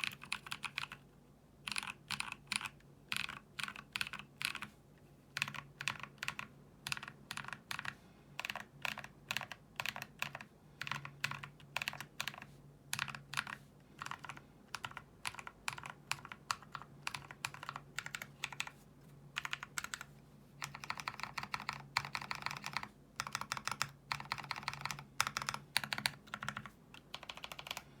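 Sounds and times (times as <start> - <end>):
mechanical keyboard typing: 0.0 - 1.0, 1.6 - 4.7, 5.3 - 18.8, 19.4 - 27.9.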